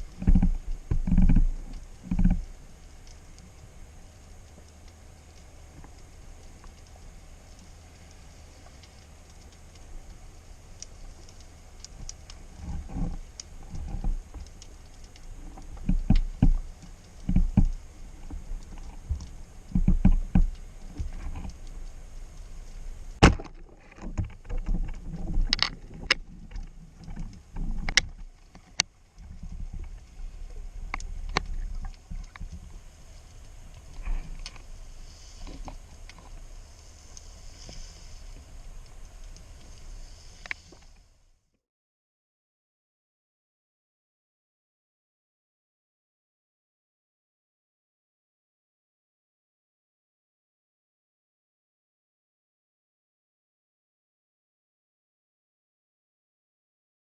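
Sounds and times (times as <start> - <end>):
sharp clicks and knocks: 23.2 - 30.0.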